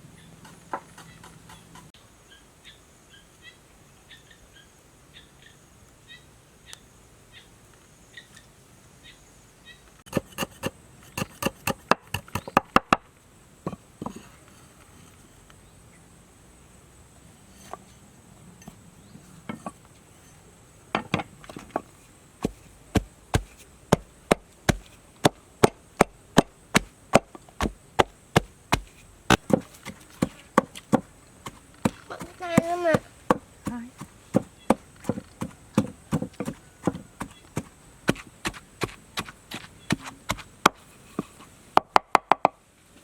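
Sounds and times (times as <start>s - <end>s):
blade chopping wood: 10.1s - 13.0s, 21.0s - 42.3s.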